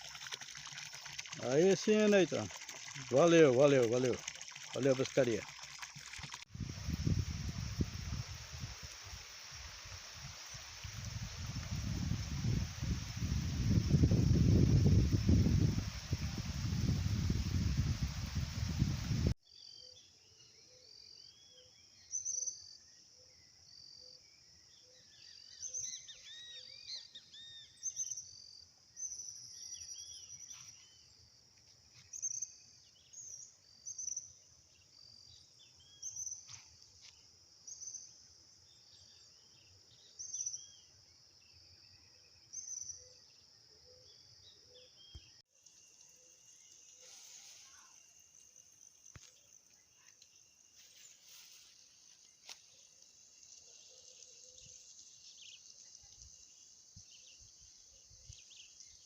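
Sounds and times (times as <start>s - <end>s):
insect buzz: 45.2s - 59.0s.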